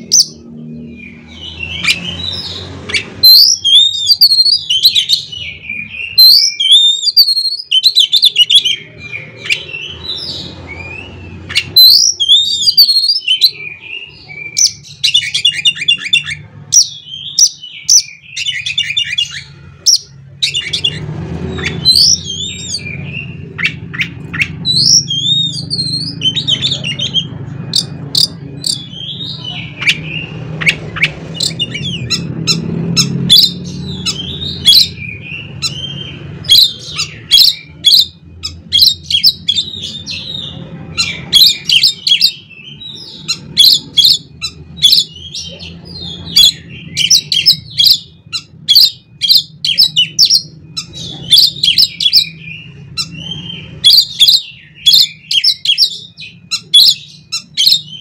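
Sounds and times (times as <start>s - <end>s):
bird singing whistled notes: 0.0s - 58.0s.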